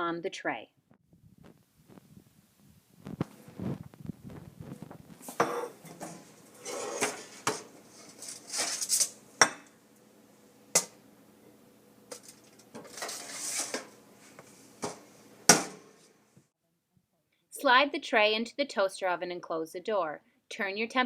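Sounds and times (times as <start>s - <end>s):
metal tongs scraping on tray: 5.4s - 9.2s, 12.1s - 14.0s.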